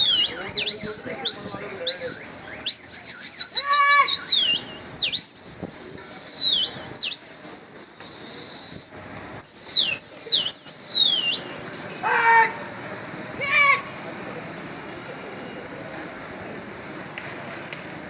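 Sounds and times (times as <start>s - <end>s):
loud human whistling: 0.0s - 11.5s.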